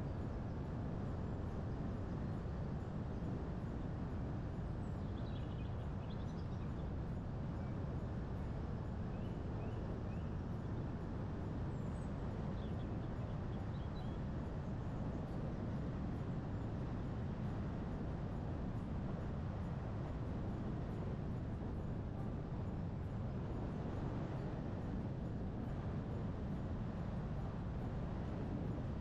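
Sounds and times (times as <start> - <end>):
wind and road noise rumble: 15.9 - 29.0.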